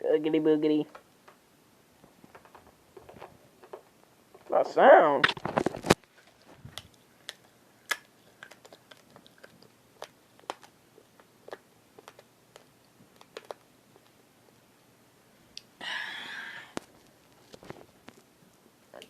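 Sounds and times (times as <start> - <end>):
chewing crunchy spaghetti: 6.1 - 14.2.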